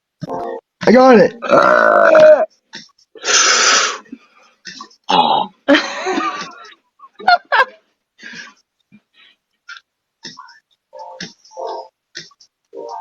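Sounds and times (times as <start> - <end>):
person burping: 1.4 - 2.5, 4.7 - 5.6.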